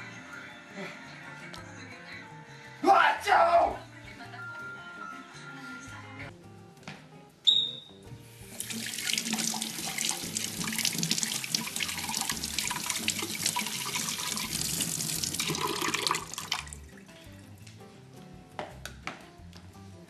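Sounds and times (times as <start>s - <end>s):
tap water running into sink: 8.5s - 17.3s.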